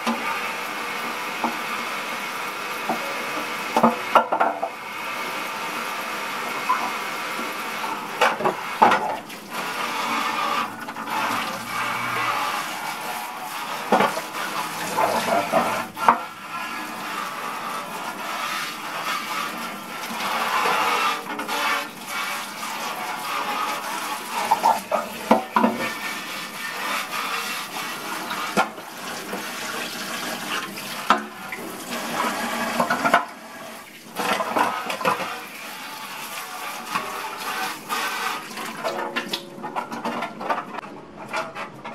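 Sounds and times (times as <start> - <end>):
tap water running into sink: 0.0 - 40.6.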